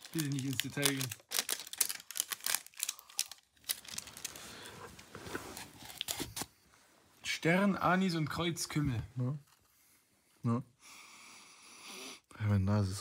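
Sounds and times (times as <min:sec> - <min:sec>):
packaging crinkling and tearing: 0:00.0 - 0:06.5
soft packaging rustling: 0:00.0 - 0:07.1.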